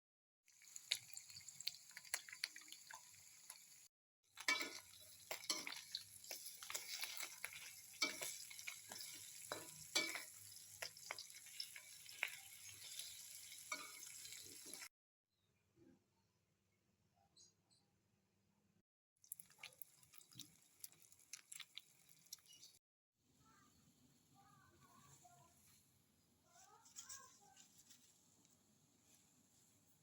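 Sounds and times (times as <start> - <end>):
food sizzling in a pan: 0.5 - 14.9, 19.3 - 22.8
utensil scraping a pan: 4.4 - 14.9.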